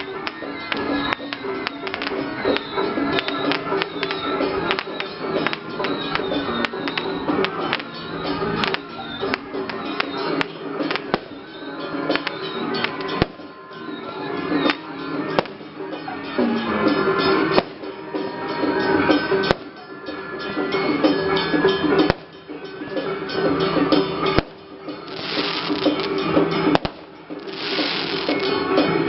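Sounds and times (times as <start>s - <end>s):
procession music with drums: 0.0s - 29.0s.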